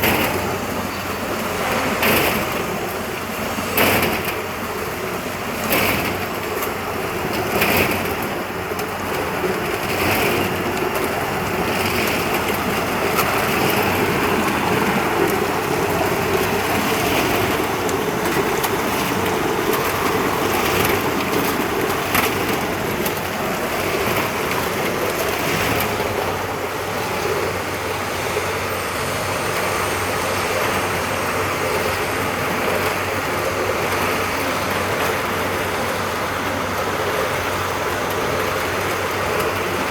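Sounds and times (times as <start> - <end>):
ice machine hum: 0.0 - 39.9
rushing water-like noise: 0.0 - 39.9.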